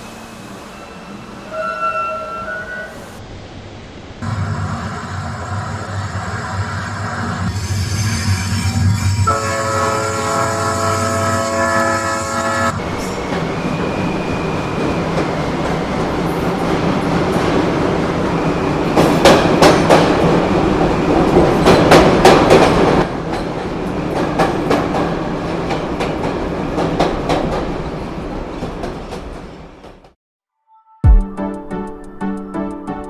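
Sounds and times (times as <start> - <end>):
train wheels clacking over rail joints: 18.9 - 27.7.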